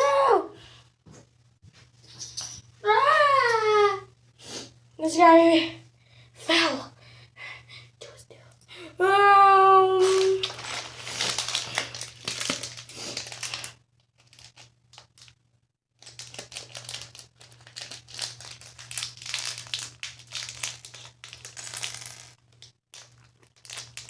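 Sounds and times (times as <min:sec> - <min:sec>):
plastic crinkling: 0:10.0 - 0:15.4, 0:16.0 - 0:24.0.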